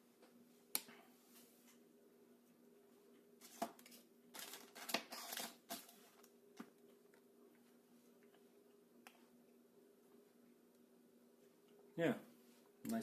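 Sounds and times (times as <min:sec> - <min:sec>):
plastic packaging rustling: 0:03.4 - 0:06.1.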